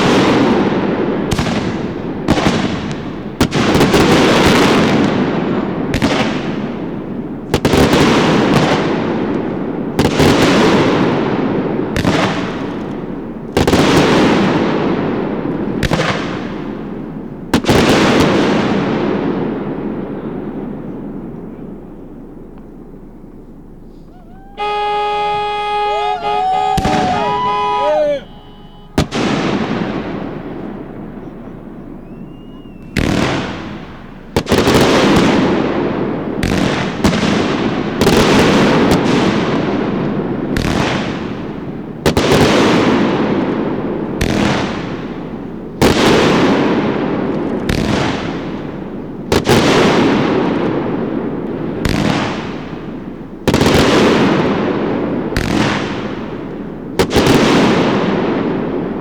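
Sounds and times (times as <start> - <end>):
fireworks bangs: 24.1 - 31.0, 57.0 - 59.0.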